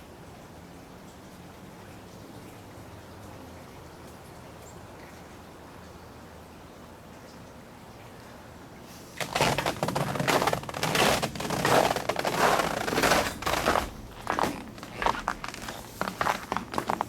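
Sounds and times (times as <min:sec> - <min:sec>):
footsteps crunching on icy snow: 0:09.2 - 0:17.0.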